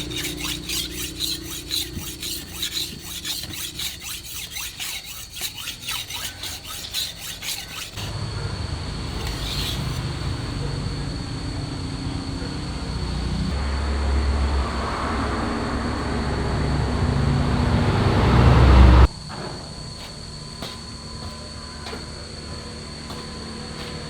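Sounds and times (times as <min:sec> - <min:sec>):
steel blade scraping strokes: 0:00.0 - 0:08.4, 0:09.1 - 0:10.2.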